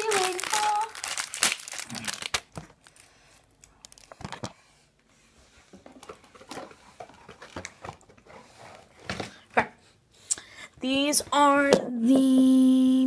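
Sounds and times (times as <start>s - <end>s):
candy packaging crinkling: 0.0s - 4.5s.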